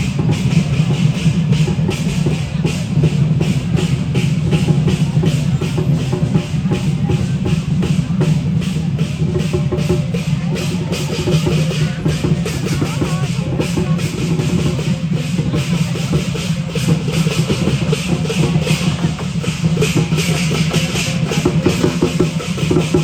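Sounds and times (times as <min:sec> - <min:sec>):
cymbals clashing: 0:00.0 - 0:23.0
drum beaten in fast strokes: 0:00.0 - 0:23.0.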